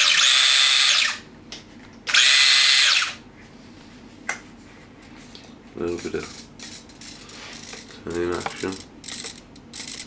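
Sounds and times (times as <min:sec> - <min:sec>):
electric motor high-pitched whine: 0:00.0 - 0:01.2, 0:02.1 - 0:03.2.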